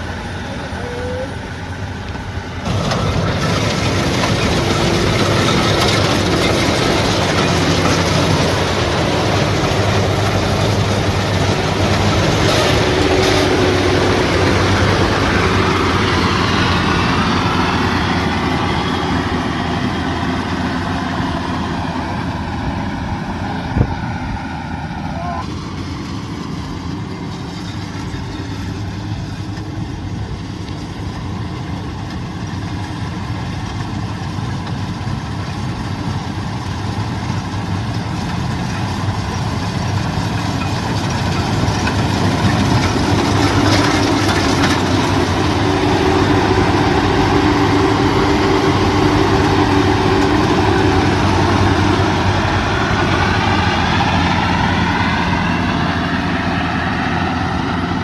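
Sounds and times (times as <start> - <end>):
combine harvester diesel engine: 0.0 - 58.0.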